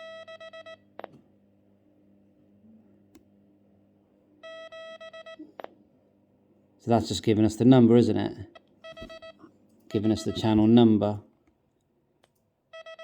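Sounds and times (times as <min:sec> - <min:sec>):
morse code beeps: 0:00.0 - 0:00.8, 0:04.4 - 0:05.4, 0:08.8 - 0:10.7, 0:12.7 - 0:13.0.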